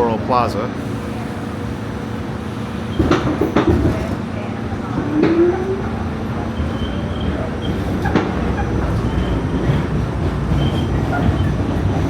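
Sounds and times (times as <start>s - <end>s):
subway wheels rumbling on rail: 0.0s - 12.0s
faint wheel squeals: 6.5s - 9.8s.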